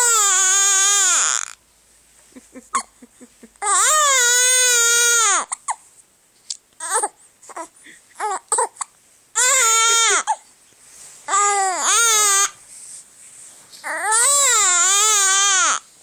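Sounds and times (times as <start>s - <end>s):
infant crying: 0.0s - 1.6s, 3.6s - 5.8s, 6.8s - 10.4s, 11.3s - 12.6s, 13.8s - 15.8s.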